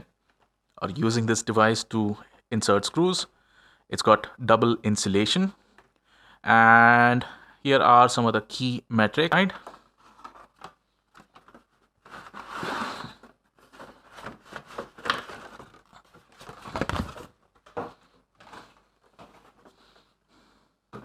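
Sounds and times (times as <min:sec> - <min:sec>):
cardboard rustling and scraping: 0:09.6 - 0:20.0.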